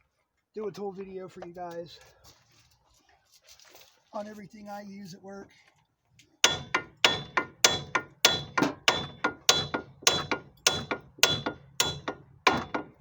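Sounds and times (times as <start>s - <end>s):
hammer striking steel: 6.4s - 13.0s.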